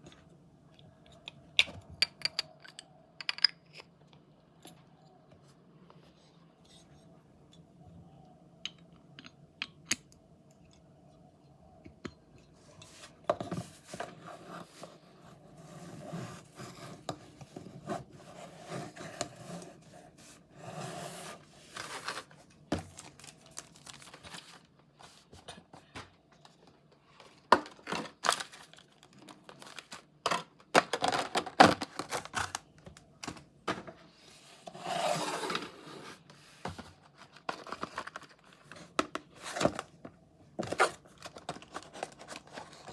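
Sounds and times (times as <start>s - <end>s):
cardboard and plastic tearing: 21.8s - 24.7s, 27.6s - 33.4s.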